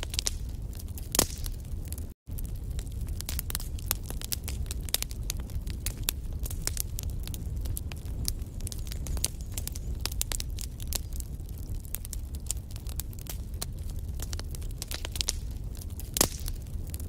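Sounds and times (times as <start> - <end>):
low rumble of flames: 0.0 - 17.0
wood fire crackling and popping: 0.0 - 17.0.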